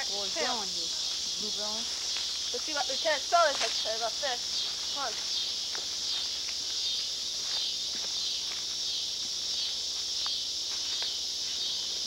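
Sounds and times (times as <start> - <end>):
insect chorus: 0.0 - 12.0
faint footfalls: 4.8 - 11.8.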